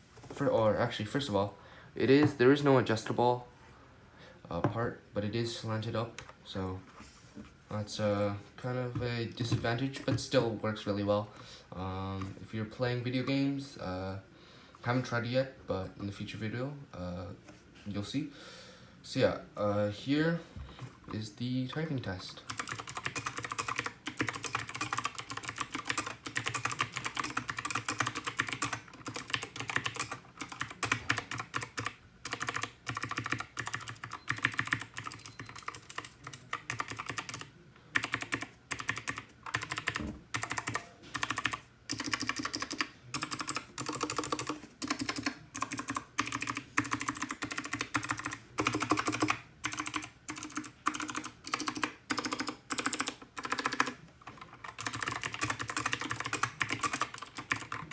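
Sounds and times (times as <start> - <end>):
mechanical keyboard typing clicks: 22.5 - 57.9.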